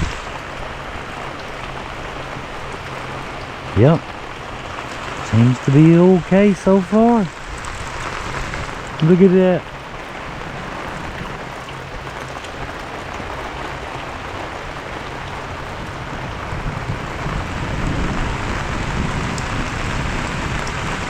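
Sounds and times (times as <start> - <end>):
low rumble of thunder: 0.0 - 1.1, 15.6 - 21.0
heavy rain pouring: 0.0 - 21.0.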